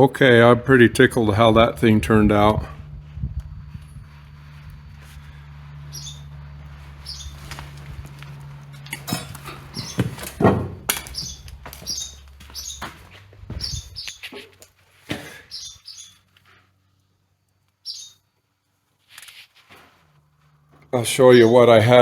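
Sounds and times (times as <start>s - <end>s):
wood and tools clattering: 7.4s - 13.6s.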